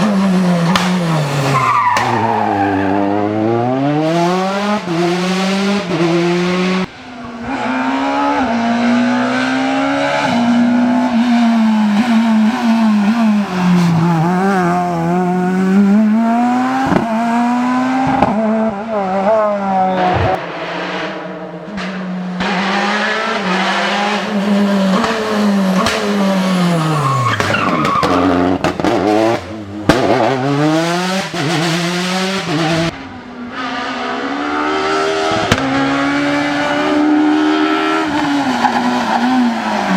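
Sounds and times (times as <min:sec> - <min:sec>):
rally car engines revving: 0:00.0 - 0:39.9
tyres squealing: 0:26.2 - 0:28.6.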